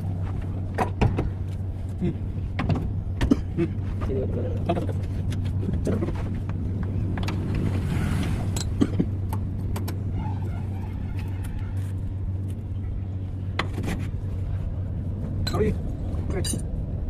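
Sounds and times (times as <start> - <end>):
metallic clinks and knocks: 15.4 - 16.7.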